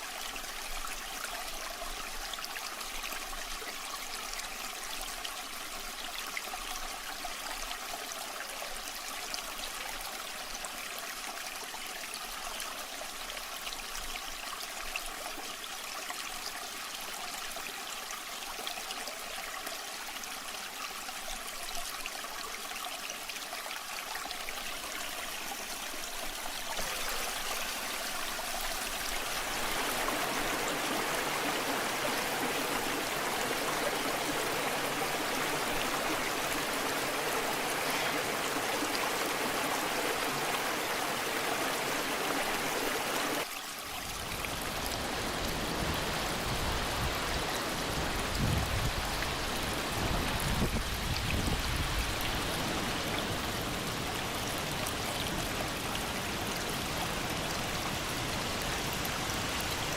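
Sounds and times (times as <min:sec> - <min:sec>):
waterfall rushing: 0:25.3 - 0:43.4.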